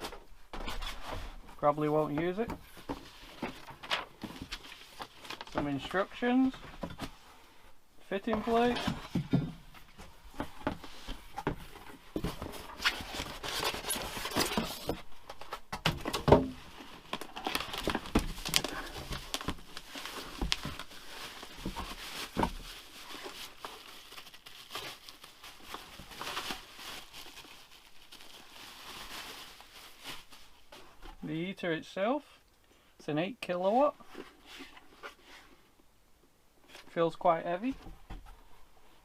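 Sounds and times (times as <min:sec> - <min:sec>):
packaging rustling and crinkling: 0:00.5 - 0:07.2, 0:08.1 - 0:31.2.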